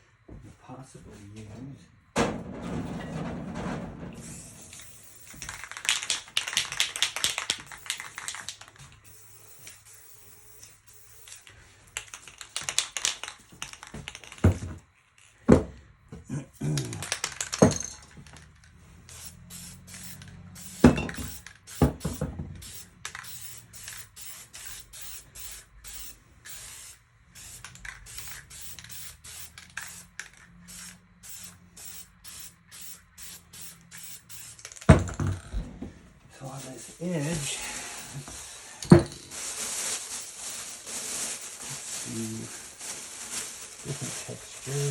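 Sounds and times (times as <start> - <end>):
aerosol spray can hissing: 19.0 - 35.0, 36.4 - 42.7.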